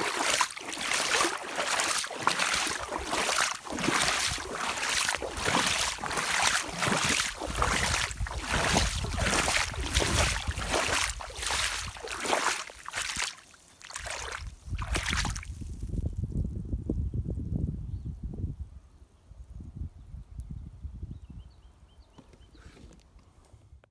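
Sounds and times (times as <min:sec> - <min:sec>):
rain boots splashing through water: 0:00.0 - 0:15.6.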